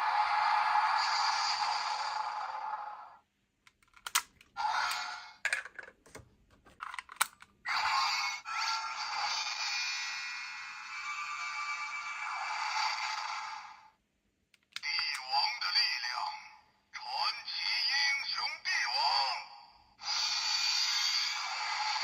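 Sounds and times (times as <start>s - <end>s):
electronic toy sound effects: 7.7s - 13.9s.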